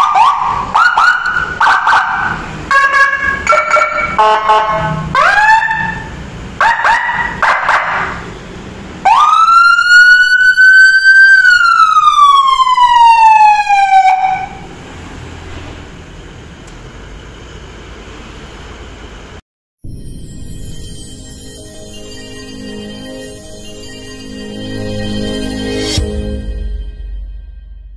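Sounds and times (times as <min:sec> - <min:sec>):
electronic siren wailing: 0:00.0 - 0:08.3, 0:09.0 - 0:14.8.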